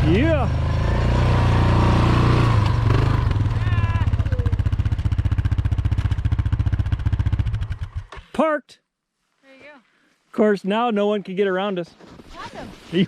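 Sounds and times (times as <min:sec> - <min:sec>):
atv engine idling: 0:00.0 - 0:08.2.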